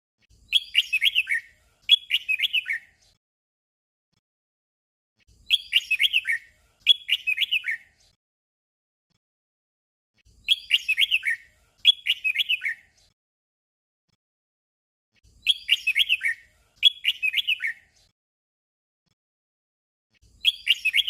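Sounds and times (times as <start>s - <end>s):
bird warbled song: 0.3s - 3.1s, 5.2s - 8.1s, 10.2s - 13.1s, 15.2s - 18.1s, 20.2s - 21.0s.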